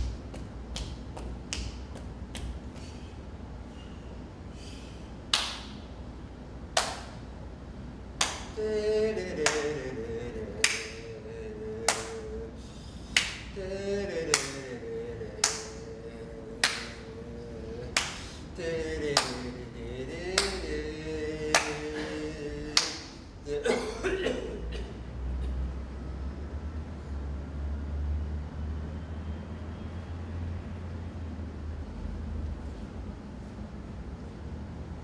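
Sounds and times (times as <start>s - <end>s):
sharp claps: 0.0s - 3.0s, 5.3s - 5.9s, 6.7s - 7.3s, 8.2s - 8.6s, 9.4s - 9.8s, 10.6s - 11.0s, 11.9s - 12.2s, 13.1s - 13.5s, 14.3s - 14.7s, 15.4s - 15.8s, 16.6s - 17.1s, 17.9s - 18.3s, 19.1s - 19.5s, 20.3s - 20.6s, 21.5s - 21.9s, 22.7s - 23.1s.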